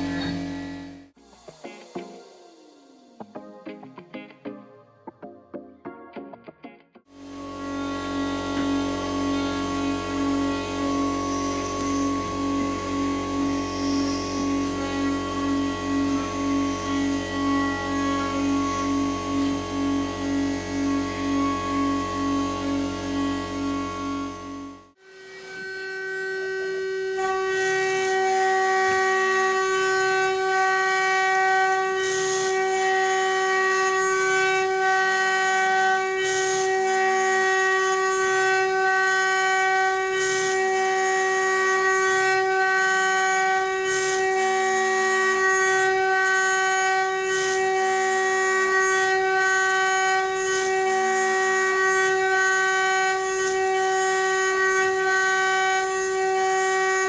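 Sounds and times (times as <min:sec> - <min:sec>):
milling spindle high whine: 0:00.0 - 0:02.0, 0:07.2 - 0:57.0.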